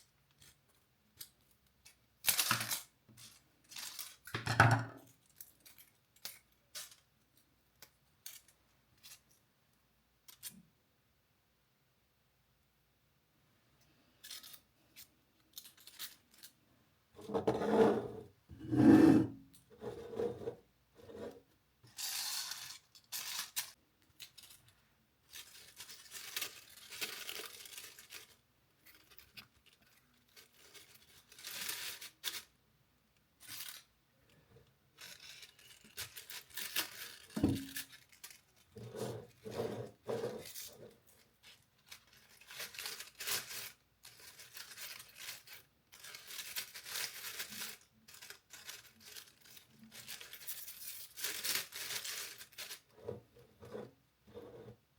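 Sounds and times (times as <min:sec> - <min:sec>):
paper rustling and tearing: 0:25.3 - 0:32.5, 0:35.0 - 0:52.9.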